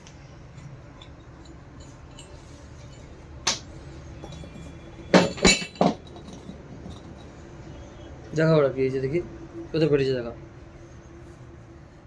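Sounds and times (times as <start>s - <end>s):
metal parts clanking: 0.6s - 7.4s.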